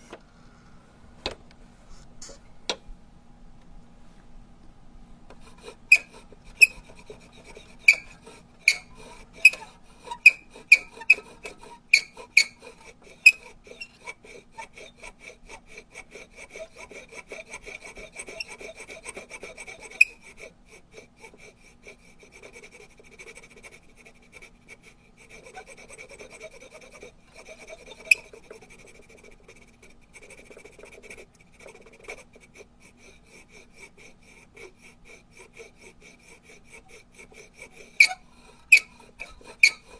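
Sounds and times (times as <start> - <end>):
rubber duck squeaking: 5.9 - 13.9, 27.6 - 28.3, 37.8 - 39.9.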